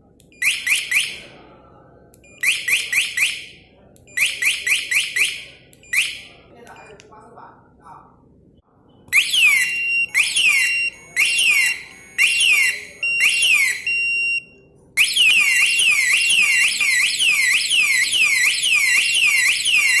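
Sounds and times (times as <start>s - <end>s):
motorcycle alarm siren: 0.4s - 1.3s, 2.3s - 3.6s, 4.2s - 6.4s, 9.2s - 20.0s.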